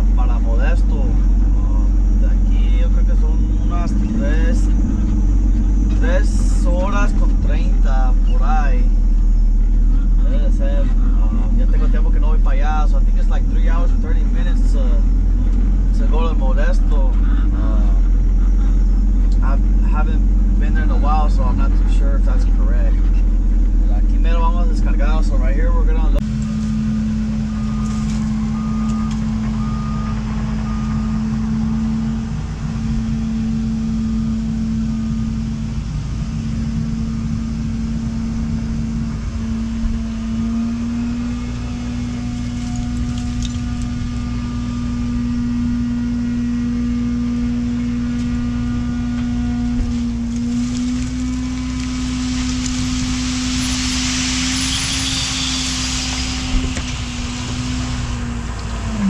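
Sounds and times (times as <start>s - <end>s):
diesel truck engine running: 0.0s - 59.0s
backup alarm beeping: 26.4s - 32.1s
air hiss: 50.5s - 58.2s.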